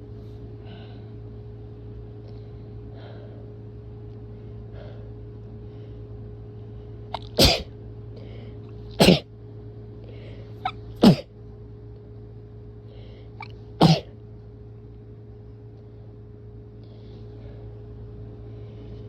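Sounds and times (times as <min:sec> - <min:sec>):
person sneezing: 0:07.2 - 0:07.7, 0:09.0 - 0:09.3, 0:11.0 - 0:11.3, 0:13.8 - 0:14.1.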